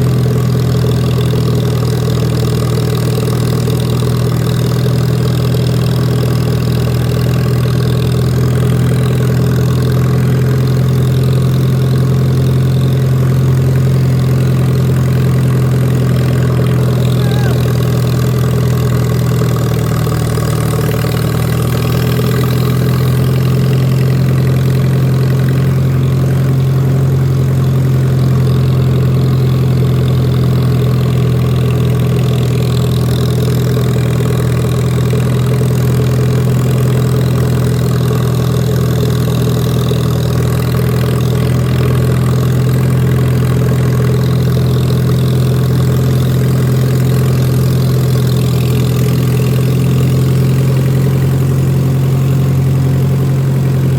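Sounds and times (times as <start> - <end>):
tractor engine humming: 0.0 - 53.9.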